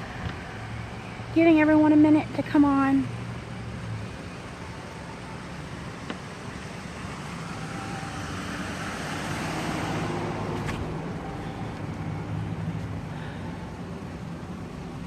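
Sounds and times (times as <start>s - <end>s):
steady traffic rumble: 0.0s - 15.0s
vehicle passing by: 6.5s - 15.0s.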